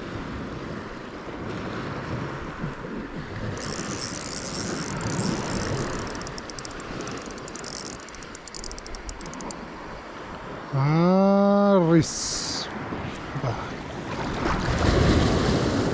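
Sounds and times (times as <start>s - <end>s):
sea surf: 0.0s - 15.9s
wind: 0.0s - 15.9s
high clicking rattle: 3.5s - 9.6s.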